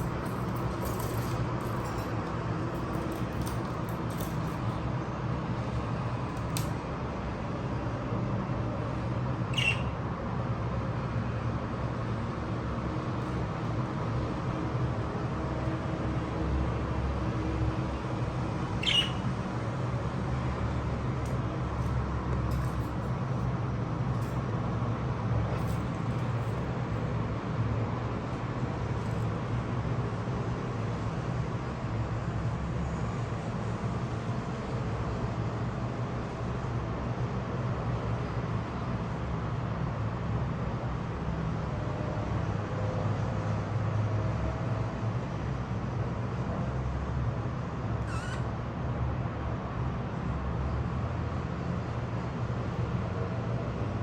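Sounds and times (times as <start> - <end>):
budgerigar chirps: 9.5 - 10.0, 18.8 - 19.2, 48.0 - 48.4.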